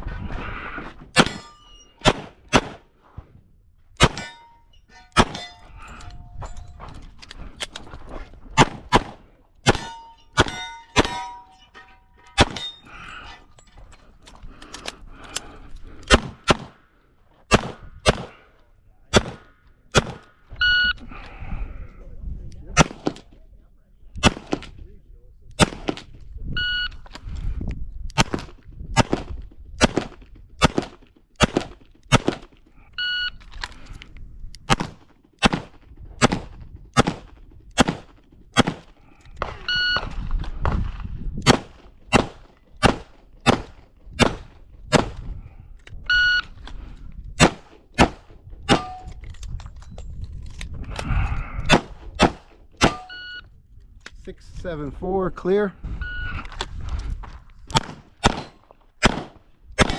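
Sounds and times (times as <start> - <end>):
revolver gunshots: 1.2 - 2.9, 4.0 - 4.4, 5.2 - 5.5, 8.6 - 11.4, 12.4 - 12.8, 16.1 - 16.8, 17.5 - 18.4, 19.1 - 20.4, 22.8 - 23.3, 24.2 - 24.7, 25.6 - 26.1, 34.7 - 39.7, 41.4 - 45.2, 47.4 - 49.1, 51.7 - 53.2, 57.7 - 59.9
short electronic beep: 20.6 - 21.0, 39.6 - 40.1, 46.1 - 46.5, 53.0 - 53.4.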